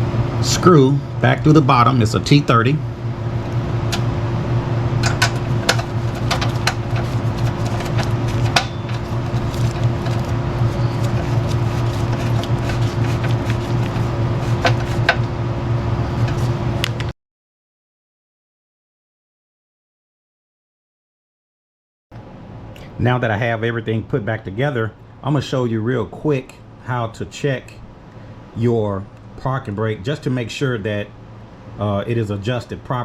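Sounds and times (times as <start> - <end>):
low machine hum: 0.0 - 17.1
hand tools clicking and tapping: 5.0 - 15.3.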